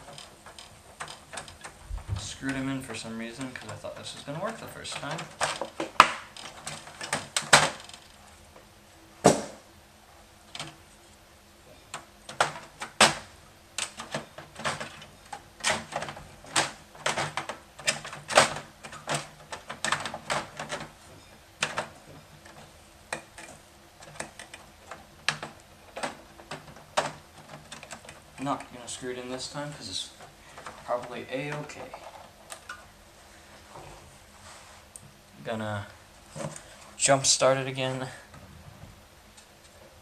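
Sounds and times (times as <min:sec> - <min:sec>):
loud knock: 0:09.2 - 0:09.6.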